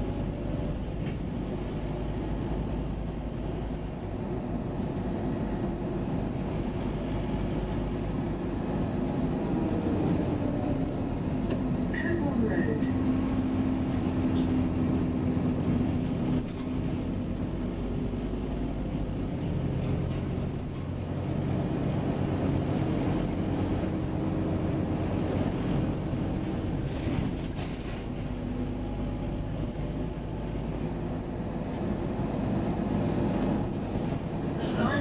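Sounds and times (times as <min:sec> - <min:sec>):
bus diesel engine running: 0:00.0 - 0:35.0.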